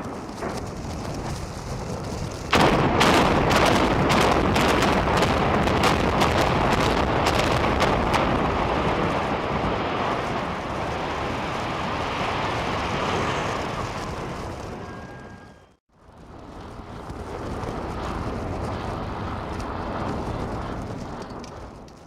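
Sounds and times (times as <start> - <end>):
sharp cracks of explosive charges: 0.0 - 15.5
building collapsing rumble: 0.0 - 22.0.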